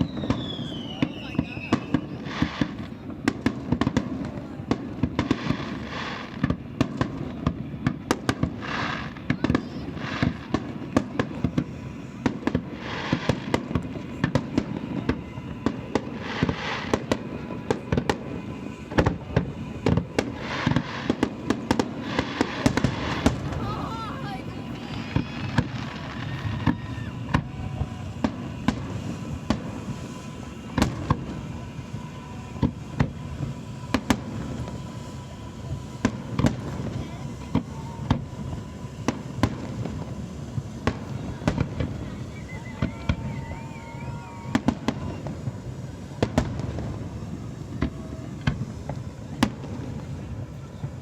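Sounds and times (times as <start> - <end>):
fireworks bursting: 0.0 - 51.0.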